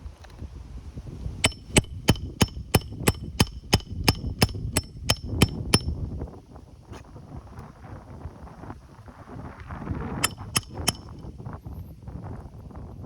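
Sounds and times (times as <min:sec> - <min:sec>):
hammer striking metal: 0:01.4 - 0:05.9, 0:10.2 - 0:11.1.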